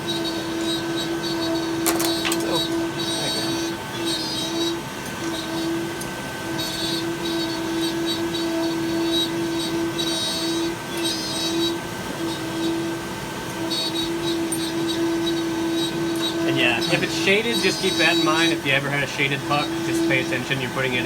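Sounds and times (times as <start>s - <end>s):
machine humming: 0.0s - 21.0s.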